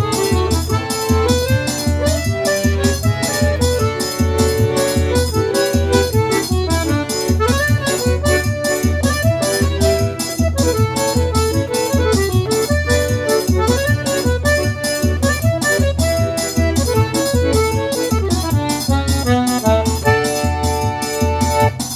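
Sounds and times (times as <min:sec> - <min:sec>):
accordion melody: 0:00.0 - 0:21.9.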